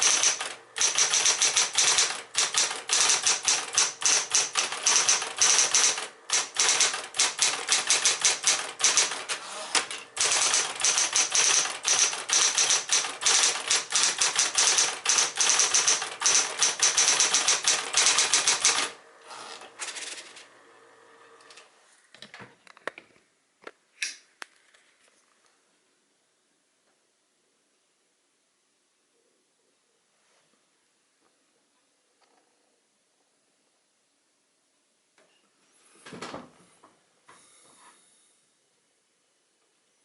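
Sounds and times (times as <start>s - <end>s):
typewriter key clatter: 0.0s - 19.0s.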